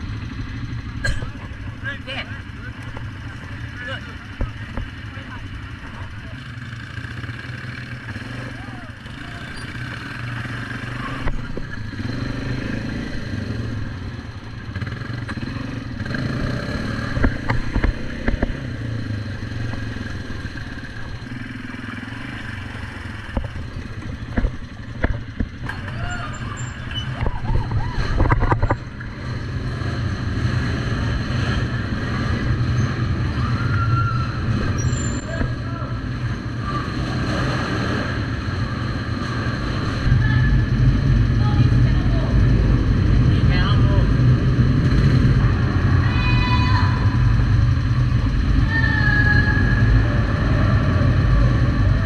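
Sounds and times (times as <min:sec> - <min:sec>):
quad bike engine running: 0:00.0 - 0:52.0
sharp knocks and rattles: 0:23.2 - 0:26.0.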